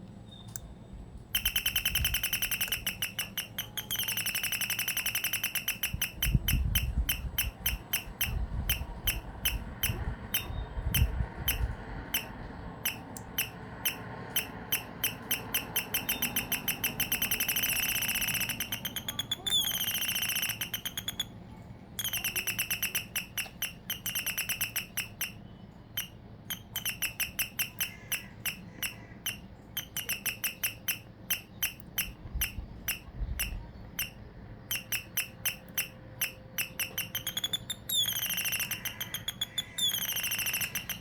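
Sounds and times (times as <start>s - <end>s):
electronic bird chirps from speaker: 1.3s - 21.4s, 22.0s - 41.0s.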